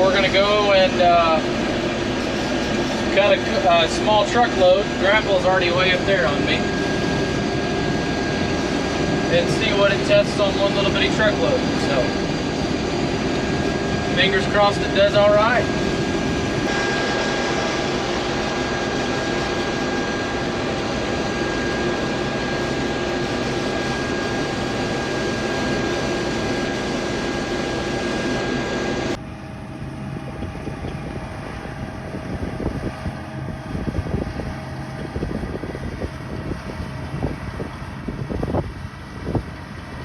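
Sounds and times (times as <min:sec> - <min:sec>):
high steady whine: 0:00.0 - 0:39.4
combine harvester drone: 0:00.0 - 0:40.0
wind on microphone: 0:29.2 - 0:40.0.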